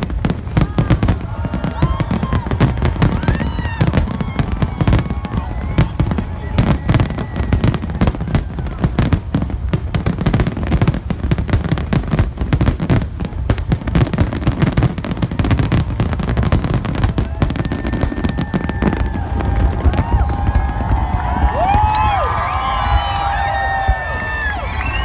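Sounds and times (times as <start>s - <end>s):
crowd voices: 0.0s - 12.5s, 13.1s - 25.0s
fireworks bangs: 0.0s - 25.0s
whistles: 21.9s - 25.0s.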